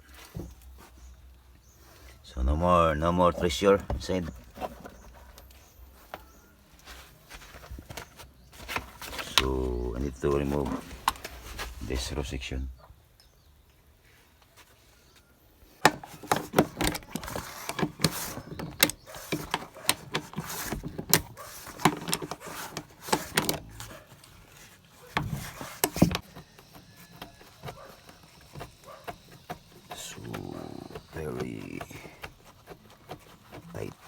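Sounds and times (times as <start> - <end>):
seat frame knocking and rattling: 15.8 - 34.0.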